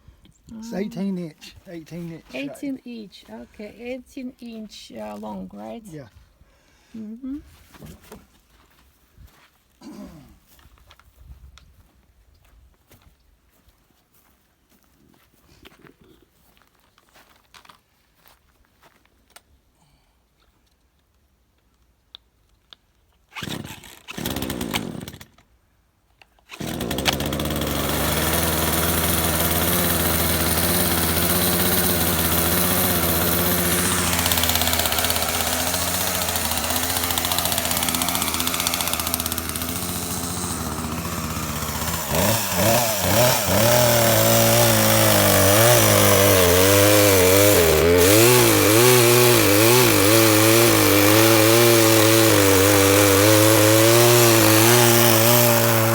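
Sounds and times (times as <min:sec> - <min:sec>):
chainsaw running: 0:01.8 - 0:04.0, 0:23.4 - 0:25.3, 0:26.5 - 0:55.9
chainsaw cutting wood: 0:01.8 - 0:04.2, 0:23.3 - 0:25.5, 0:26.4 - 0:55.9
chainsaw pull-start bursts: 0:23.3 - 0:25.4, 0:26.5 - 0:55.9.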